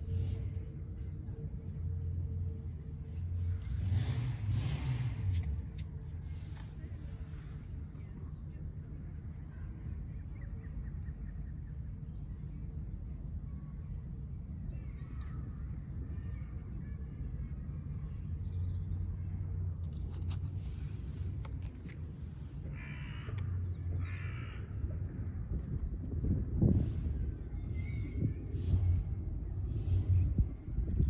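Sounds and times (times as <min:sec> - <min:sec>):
crow cawing: 0:22.7 - 0:24.8.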